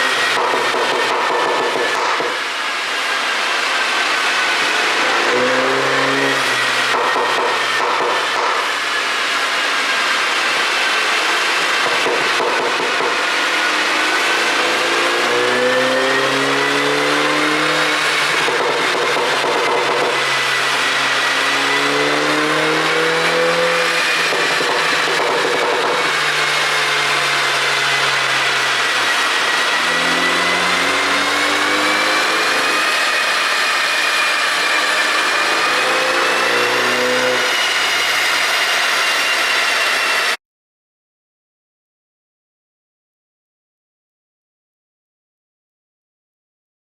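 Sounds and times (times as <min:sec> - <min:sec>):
car engine pulling: 0:11.6 - 0:40.4
high wavering whine: 0:13.1 - 0:40.4.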